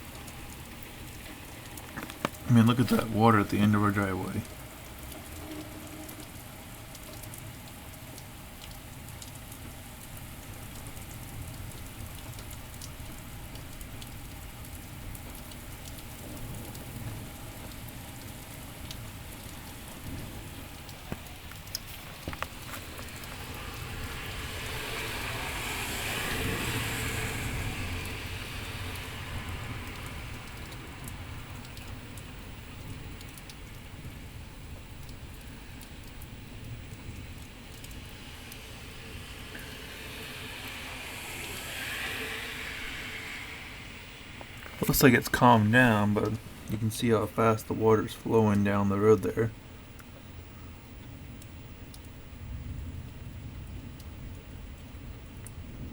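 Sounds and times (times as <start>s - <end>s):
rain falling: 0.0s - 55.9s
broad hiss: 38.1s - 46.7s.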